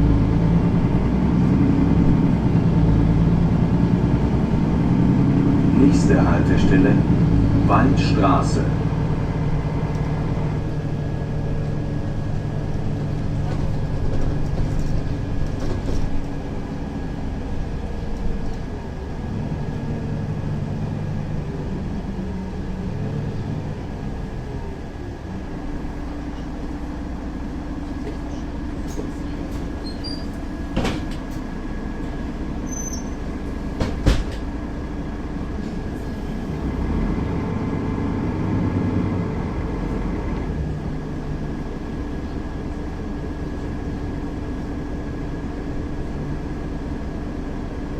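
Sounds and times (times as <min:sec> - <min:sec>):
bus diesel engine running: 0:00.0 - 0:47.9
sharp knocks: 0:33.8 - 0:34.4.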